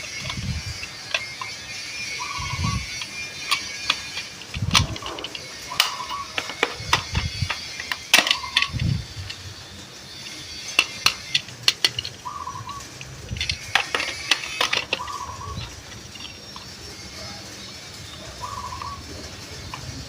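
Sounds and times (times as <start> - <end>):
plastic toy cars clicking: 0.0 - 20.0
warbling chirp: 2.1 - 3.7, 12.2 - 13.0, 15.0 - 19.4.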